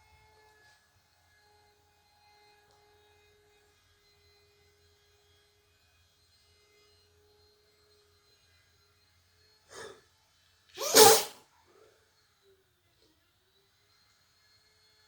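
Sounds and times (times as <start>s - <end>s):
person sneezing: 9.8s - 10.0s, 10.8s - 11.4s.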